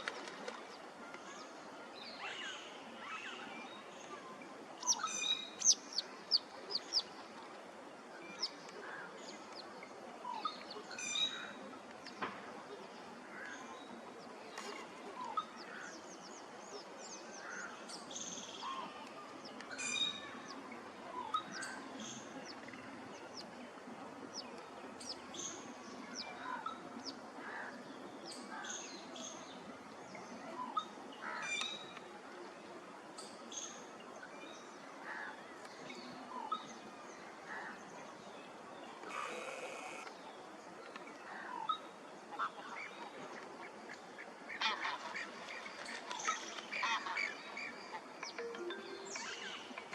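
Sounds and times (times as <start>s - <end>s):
outdoor background noise: 0.0s - 49.9s
birds chirping: 38.8s - 41.8s, 43.9s - 49.9s.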